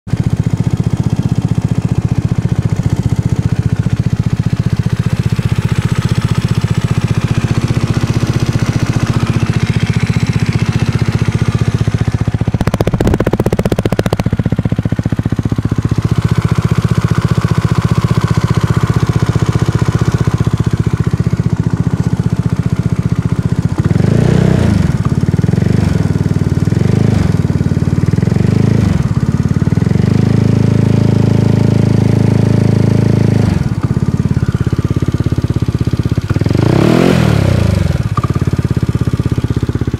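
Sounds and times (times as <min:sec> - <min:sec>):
scooter engine idling with ticking: 0:00.1 - 0:39.9
throttle blips revving engine: 0:12.6 - 0:14.6.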